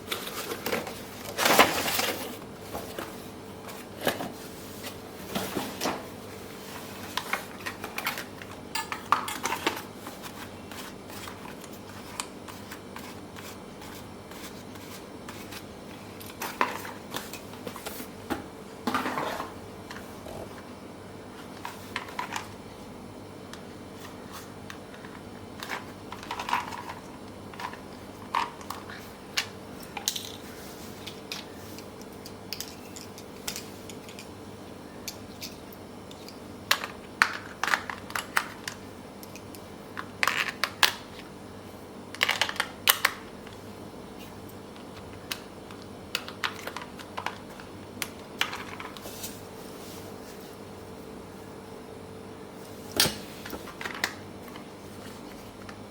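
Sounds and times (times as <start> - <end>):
faint hum: 0.0 - 55.9.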